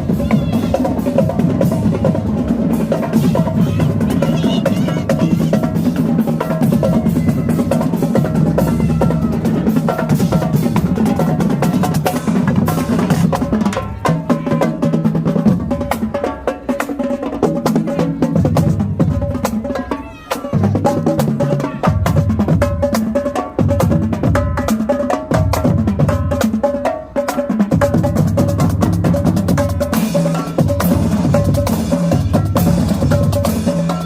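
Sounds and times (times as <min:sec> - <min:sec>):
marching band playing: 0:00.0 - 0:34.0
snare and bass drums pounding: 0:20.6 - 0:34.0.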